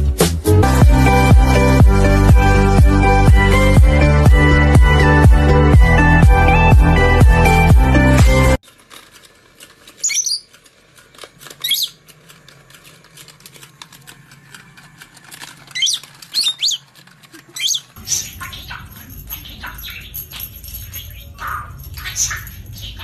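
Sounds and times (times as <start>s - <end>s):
electronic background music: 0.0s - 8.6s
parrot squeaky chirps: 10.0s - 10.5s, 11.6s - 12.0s, 15.7s - 16.9s, 17.5s - 23.0s.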